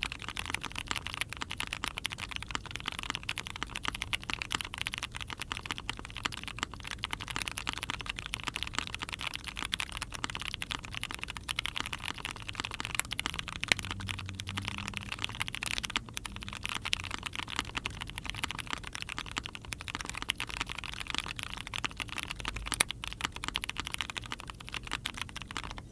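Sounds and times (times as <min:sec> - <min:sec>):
mechanical keyboard typing: 0:00.0 - 0:25.9.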